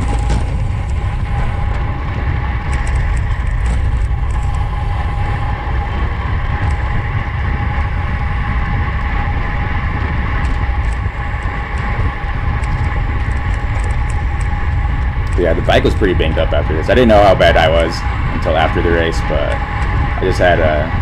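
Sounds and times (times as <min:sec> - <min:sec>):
faint steady whine: 0:00.0 - 0:21.0
wind rushing over microphone: 0:00.0 - 0:21.0.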